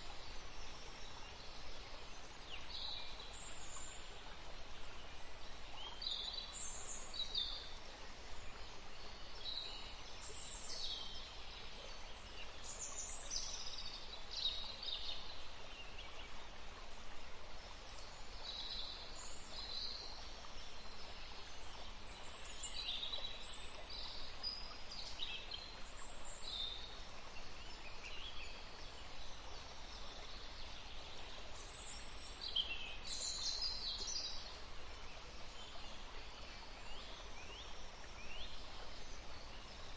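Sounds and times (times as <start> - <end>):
running water: 0.0 - 39.9.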